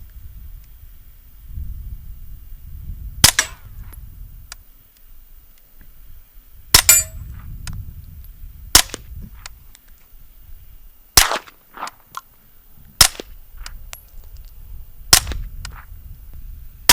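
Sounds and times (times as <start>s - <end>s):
suppressed gunshots: 3.2s - 3.7s, 8.7s - 9.0s, 11.2s - 12.0s, 13.0s - 13.3s, 15.1s - 15.5s.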